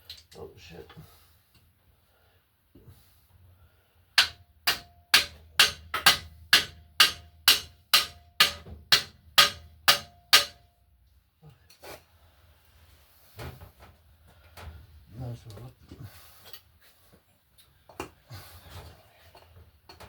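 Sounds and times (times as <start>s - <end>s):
hammer blows ringing: 4.2s - 10.7s.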